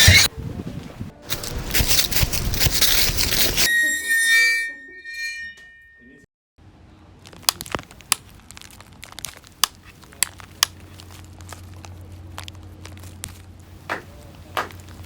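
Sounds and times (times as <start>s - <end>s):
crushing and crumpling cracks: 1.3s - 3.7s, 7.2s - 15.0s.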